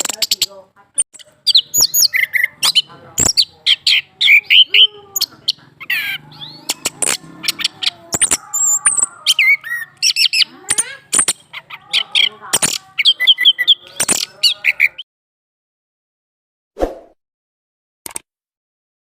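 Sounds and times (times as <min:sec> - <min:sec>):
sharp bird clicking notes: 0:06.7 - 0:11.5.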